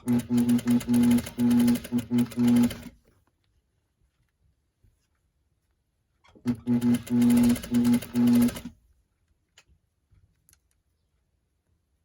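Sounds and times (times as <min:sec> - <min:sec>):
sewing machine stitching: 0:00.0 - 0:03.0, 0:06.4 - 0:08.7.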